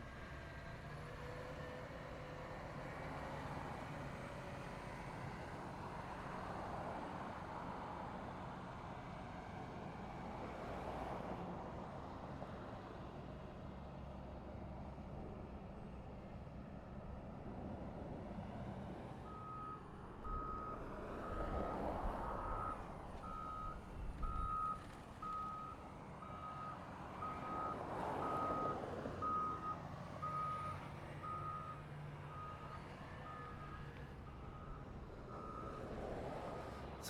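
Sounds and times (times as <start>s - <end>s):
passing traffic: 0.0s - 37.0s.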